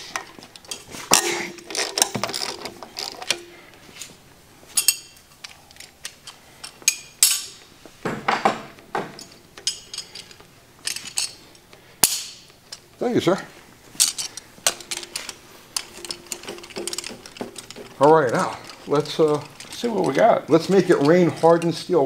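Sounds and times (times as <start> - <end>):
metal clinks: 4.8 - 7.6, 9.2 - 11.4, 14.0 - 21.9.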